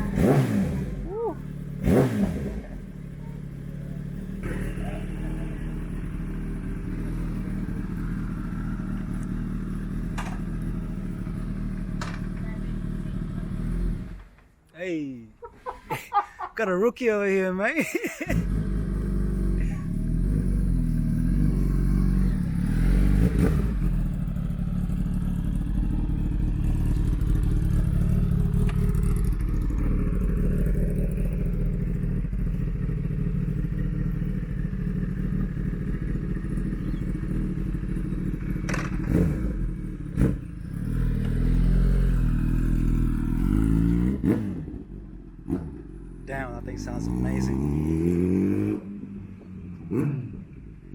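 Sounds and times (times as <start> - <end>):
motorcycle engine idling: 0.0 - 14.5, 18.2 - 43.4.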